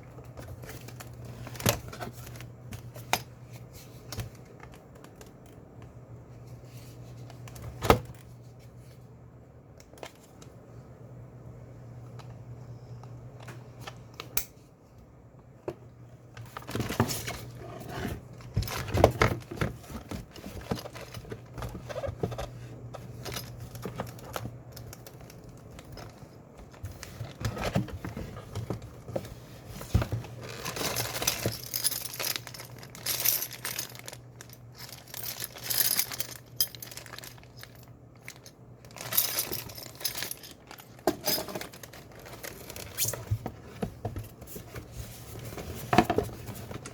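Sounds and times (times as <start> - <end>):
plastic and cardboard crinkling: 16.2 - 46.9
small hard parts clattering: 16.5 - 44.7.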